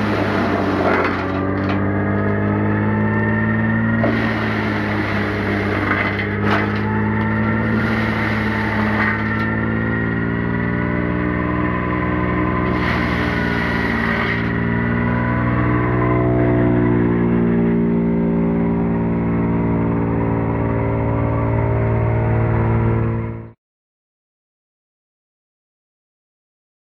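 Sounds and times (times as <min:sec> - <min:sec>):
wood chipper running: 0:00.0 - 0:23.5.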